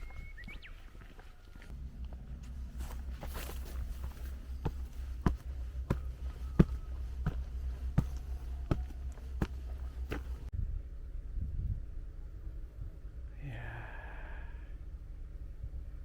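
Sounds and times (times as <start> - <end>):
footsteps on hard surface: 1.0 - 10.5
steady low rumble: 1.6 - 16.0.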